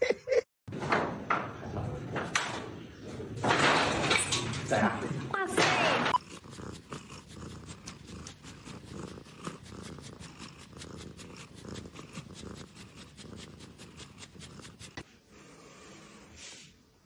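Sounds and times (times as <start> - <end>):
cat purring: 6.1 - 16.3.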